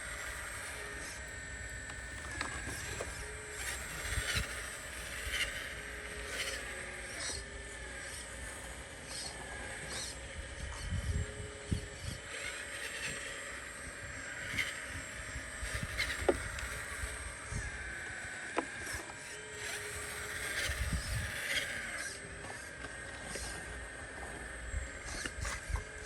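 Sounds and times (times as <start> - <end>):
small electric motors whining: 0.0 - 26.0.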